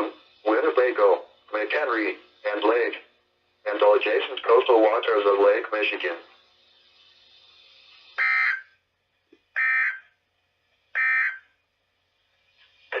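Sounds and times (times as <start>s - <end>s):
faint radio hiss: 0.0s - 13.0s
screechy digital data tone bursts: 8.1s - 8.8s, 9.6s - 10.1s, 11.0s - 11.5s.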